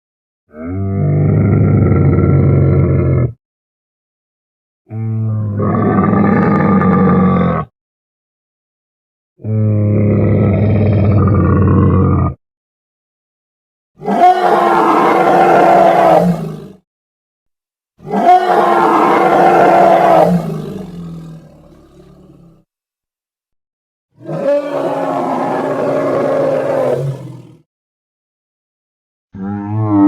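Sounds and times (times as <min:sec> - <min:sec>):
deep growling creature roars: 0:00.5 - 0:03.4, 0:04.9 - 0:07.7, 0:09.4 - 0:12.4, 0:14.0 - 0:16.8, 0:18.0 - 0:22.7, 0:24.2 - 0:27.7, 0:29.4 - 0:30.0.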